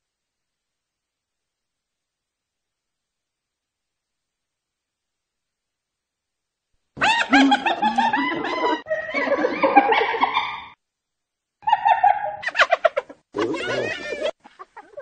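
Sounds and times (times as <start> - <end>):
hyena giggling: 7.0 - 10.7, 11.6 - 15.0.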